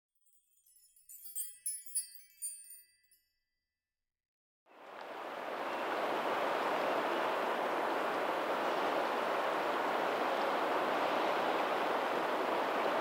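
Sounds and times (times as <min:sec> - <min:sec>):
chiming bell-like tones: 0:00.1 - 0:03.5
water rushing over pebbly shore: 0:05.0 - 0:13.0.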